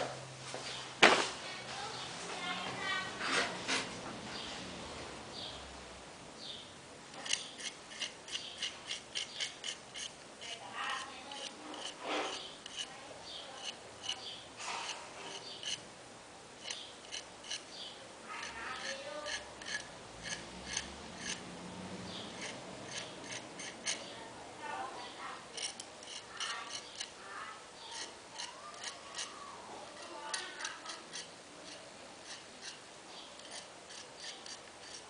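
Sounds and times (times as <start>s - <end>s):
small tool clicking and scraping: 7.1s - 15.9s, 16.6s - 21.5s, 22.1s - 24.1s, 25.5s - 27.2s, 27.8s - 35.0s.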